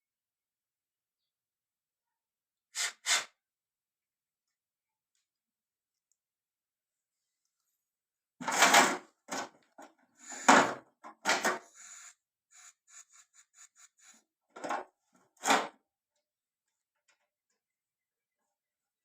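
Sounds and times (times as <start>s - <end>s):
knocks and clatters: 8.4s - 11.7s.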